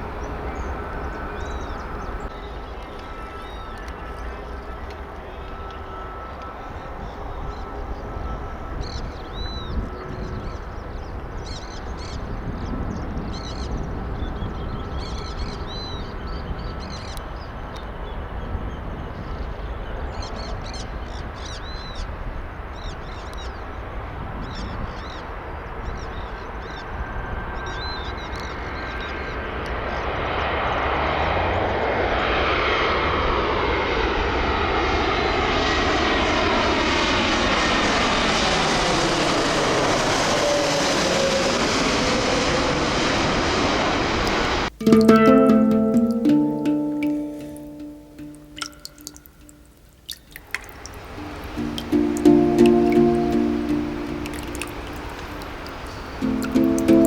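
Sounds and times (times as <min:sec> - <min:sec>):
airplane engine overhead: 0:00.0 - 0:57.0
small birds chirping: 0:46.0 - 0:56.9.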